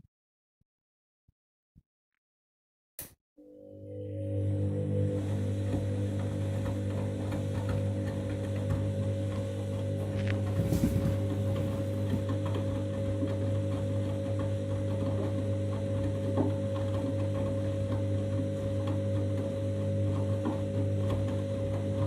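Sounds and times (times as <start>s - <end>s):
washing machine motor hum: 3.4s - 22.0s.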